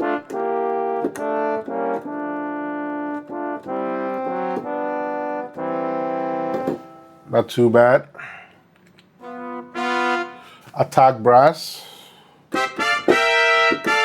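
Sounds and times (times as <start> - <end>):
synthesizer brass chords: 0.0 - 7.4, 9.2 - 10.6, 12.5 - 14.0.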